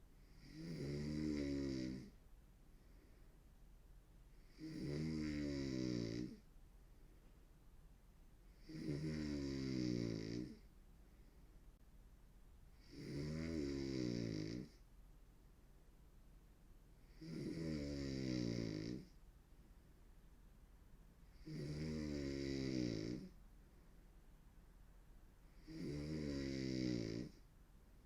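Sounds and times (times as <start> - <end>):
woman snoring: 0.3 - 2.2, 4.4 - 6.4, 8.6 - 10.6, 12.8 - 14.7, 17.1 - 19.1, 21.4 - 23.3, 25.6 - 27.4.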